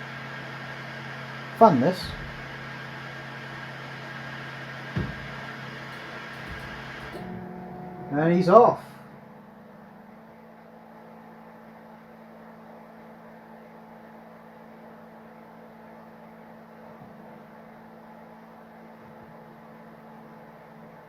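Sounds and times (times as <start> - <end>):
printer fans and motor hum: 0.0 - 21.0.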